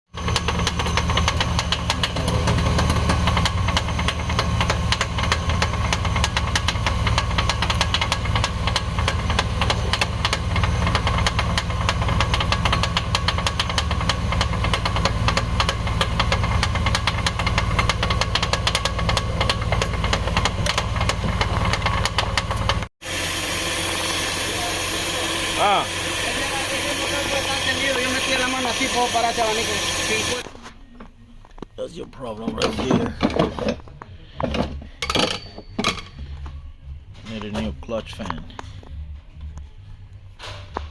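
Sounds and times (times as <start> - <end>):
van engine running: 0.1 - 30.5.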